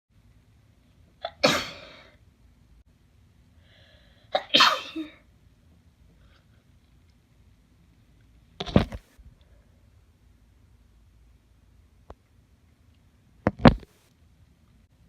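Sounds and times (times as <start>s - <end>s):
person sneezing: 1.2s - 2.2s, 4.3s - 5.3s
drawn-in breath: 3.6s - 4.3s.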